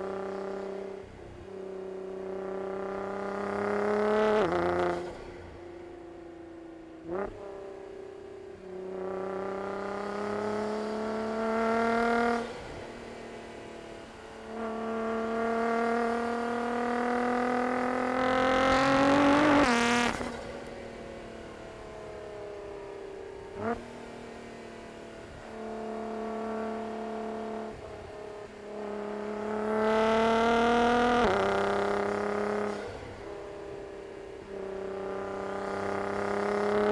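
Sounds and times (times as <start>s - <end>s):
car engine accelerating hard: 13.4s - 22.8s, 24.7s - 33.3s, 34.8s - 36.9s.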